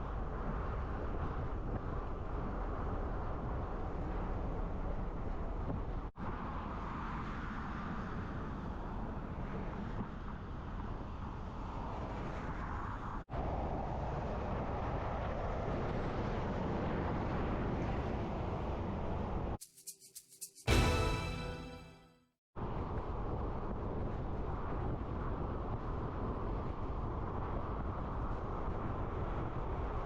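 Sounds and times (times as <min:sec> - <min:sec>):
road and wind noise: 0:00.0 - 0:19.6, 0:22.6 - 0:30.0.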